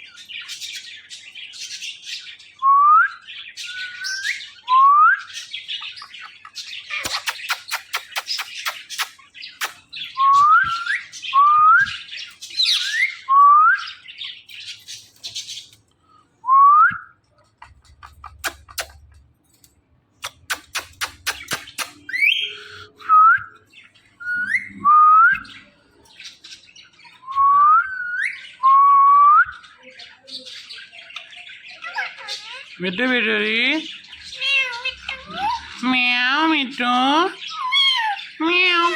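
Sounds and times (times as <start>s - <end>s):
sharp clicks: 20.2s - 22.1s
parrot whistling: 24.2s - 25.6s.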